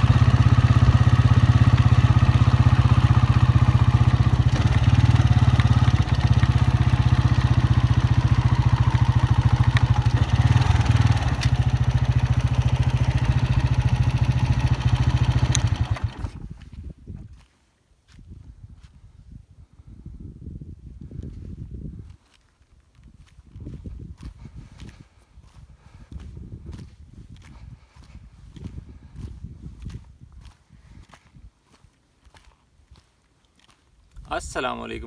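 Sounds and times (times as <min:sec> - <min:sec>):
motorcycle engine running: 0:00.0 - 0:16.7.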